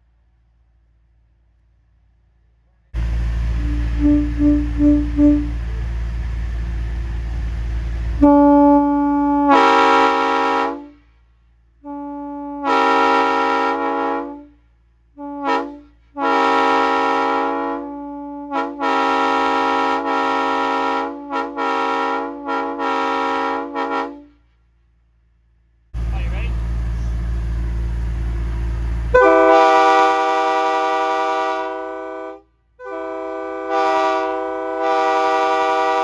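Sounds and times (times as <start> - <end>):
train air horn blasts: 3.0 - 6.8, 8.1 - 11.2, 11.8 - 24.5, 29.0 - 36.0.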